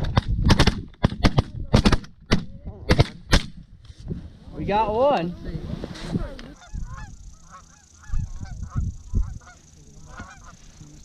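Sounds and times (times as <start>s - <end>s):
wind buffeting microphone: 0.0s - 11.0s
geese honking: 6.0s - 11.0s.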